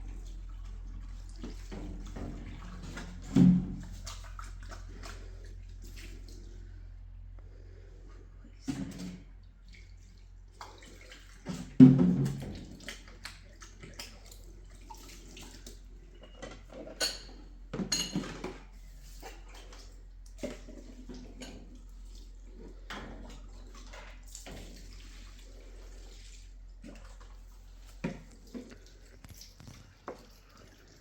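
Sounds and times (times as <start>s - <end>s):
steady low hum: 0.0s - 10.6s.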